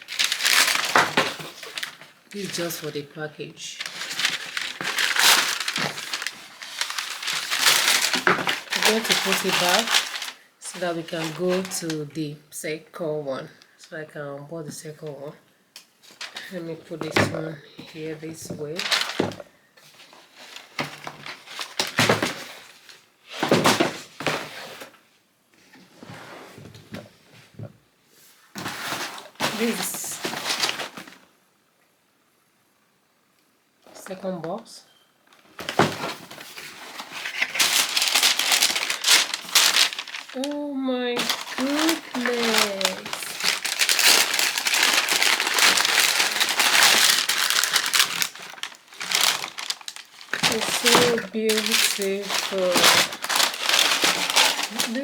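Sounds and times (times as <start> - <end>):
packing paper crinkling: 0.0 - 12.1, 16.0 - 17.2, 17.8 - 23.6, 28.7 - 31.2, 35.4 - 55.0.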